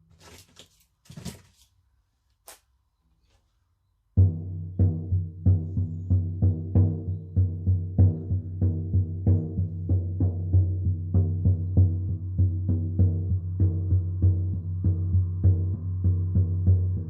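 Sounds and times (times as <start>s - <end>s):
frame drum beat: 4.2s - 17.0s.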